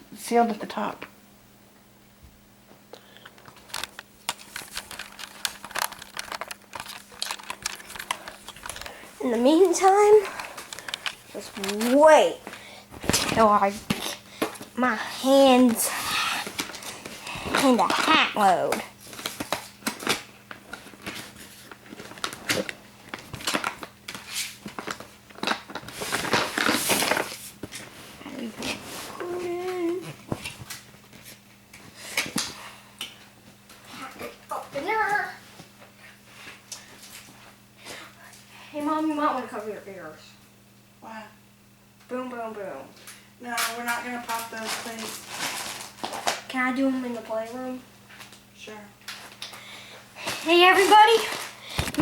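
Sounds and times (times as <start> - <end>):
plastic packaging crinkling: 3.4 - 14.2, 16.4 - 27.9, 43.6 - 46.5, 50.3 - 52.0.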